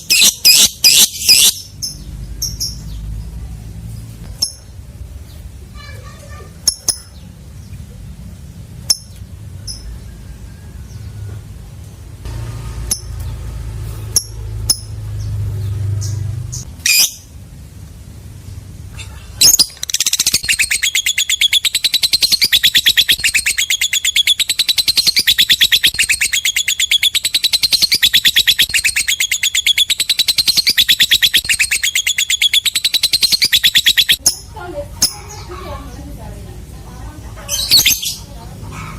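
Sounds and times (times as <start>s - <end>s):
lovebird chattering: 0.0s - 3.0s, 6.5s - 7.4s, 16.0s - 17.3s, 18.9s - 36.3s, 36.9s - 38.9s.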